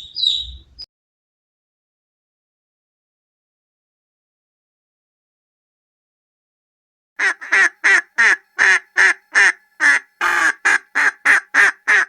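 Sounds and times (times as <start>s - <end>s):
duck quacking: 7.2s - 12.0s.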